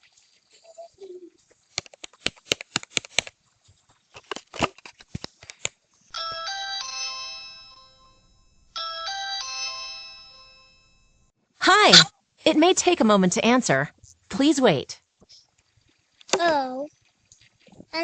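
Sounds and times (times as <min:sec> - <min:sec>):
fingers tapping doorbell: 0:06.2 - 0:11.2
doorbell chime: 0:06.2 - 0:11.3.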